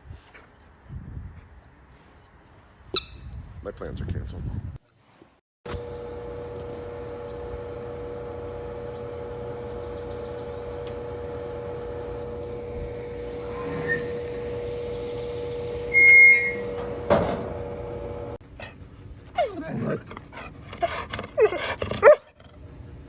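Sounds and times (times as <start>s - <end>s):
mechanical hum: 5.7s - 18.4s.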